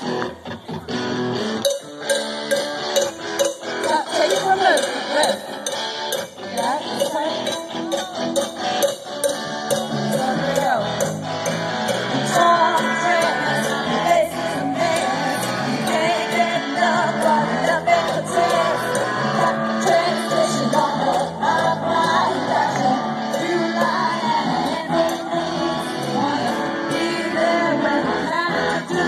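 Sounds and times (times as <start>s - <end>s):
drums keeping a steady beat: 0.0s - 29.0s
guitars and bass: 0.0s - 29.0s
person singing: 6.5s - 8.5s, 9.7s - 11.1s, 11.9s - 29.0s.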